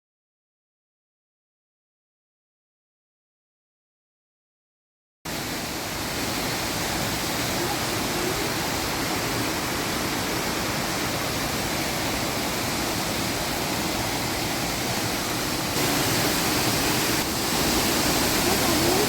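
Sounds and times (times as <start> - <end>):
waterfall rushing and splashing: 5.3 - 19.0.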